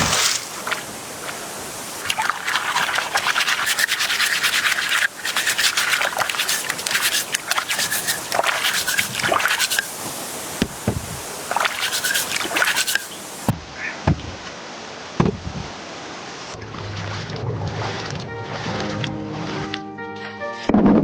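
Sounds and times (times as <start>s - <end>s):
rough scraping and rubbing: 0.0s - 13.5s.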